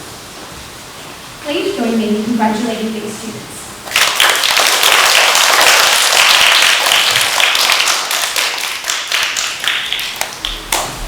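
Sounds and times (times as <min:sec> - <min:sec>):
audience applauding: 0:03.9 - 0:11.0.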